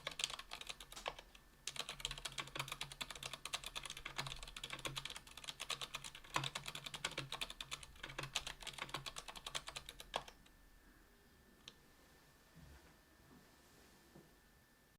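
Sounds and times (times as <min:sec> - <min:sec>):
keyboard typing: 0:00.0 - 0:10.5.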